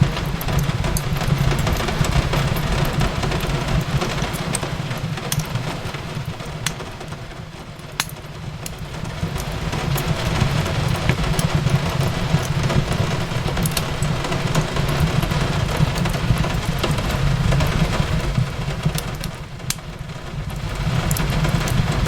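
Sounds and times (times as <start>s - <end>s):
fireplace crackling: 0.0s - 22.0s
rain on a window: 0.0s - 22.0s.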